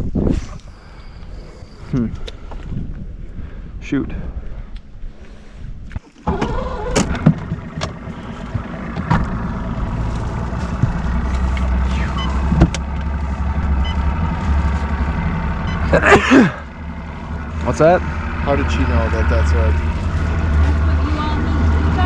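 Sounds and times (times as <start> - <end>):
boat motor humming: 6.4 - 22.0.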